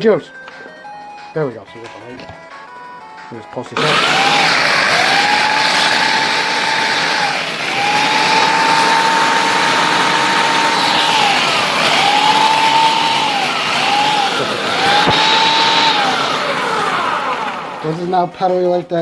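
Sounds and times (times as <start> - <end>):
blender motor grinding: 3.8 - 18.2.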